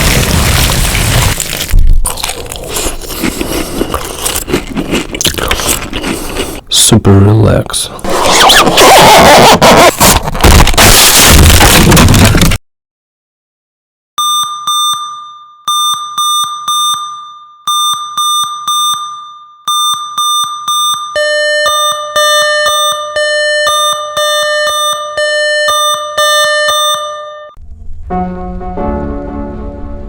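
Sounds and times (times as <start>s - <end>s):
fast two-pitch beeps: 14.2s - 27.2s
high electronic alarm beeps: 14.2s - 27.6s.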